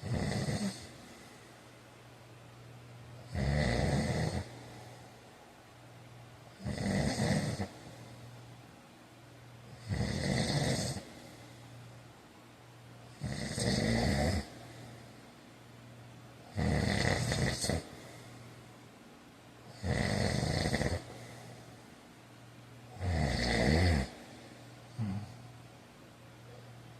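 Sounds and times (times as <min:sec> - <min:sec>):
man snoring: 0:00.0 - 0:01.0, 0:03.2 - 0:04.7, 0:06.6 - 0:08.0, 0:09.7 - 0:11.2, 0:13.1 - 0:14.6, 0:16.5 - 0:18.1, 0:19.7 - 0:21.4, 0:23.0 - 0:24.2, 0:25.0 - 0:25.4
quiet breathing: 0:00.0 - 0:02.3, 0:03.1 - 0:09.0, 0:09.6 - 0:26.7.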